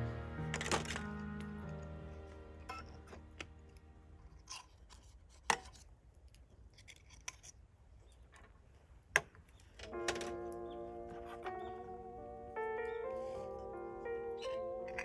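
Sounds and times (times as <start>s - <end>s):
background music: 0.0s - 4.6s, 9.9s - 15.0s.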